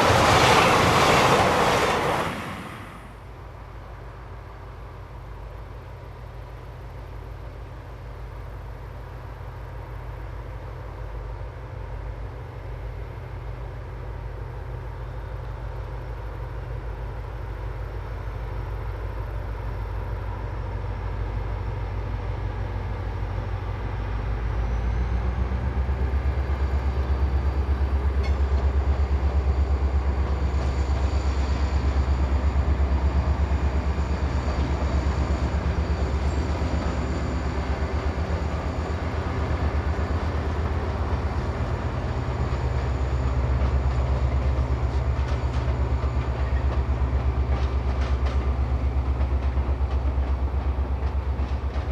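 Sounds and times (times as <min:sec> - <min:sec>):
train rumbling past: 0:00.0 - 0:51.9.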